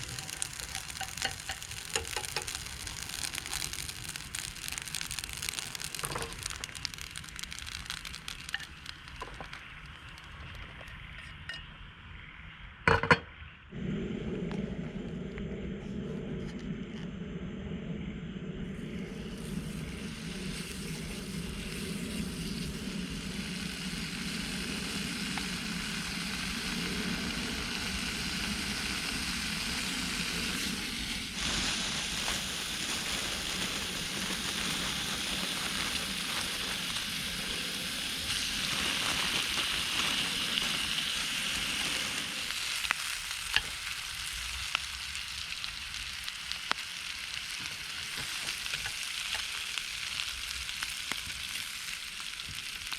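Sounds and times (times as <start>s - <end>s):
food sizzling: 0.0s - 11.6s, 18.8s - 52.9s
low hum: 11.2s - 42.6s.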